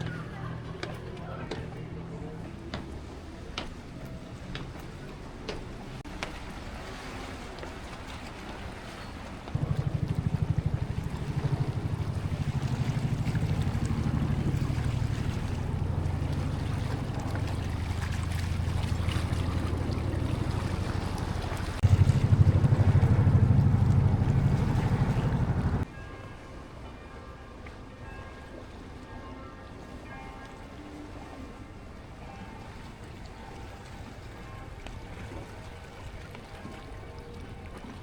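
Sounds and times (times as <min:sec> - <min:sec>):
engine running with low throb: 0:09.5 - 0:25.8.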